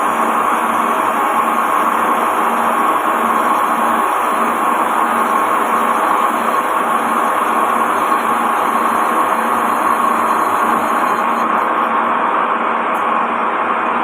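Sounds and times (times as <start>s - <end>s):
lathe cutting wood: 0.0s - 12.0s.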